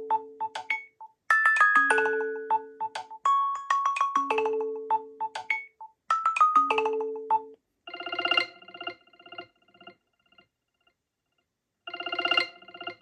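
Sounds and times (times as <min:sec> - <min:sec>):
melodic mallet ringtone: 0:00.0 - 0:09.4.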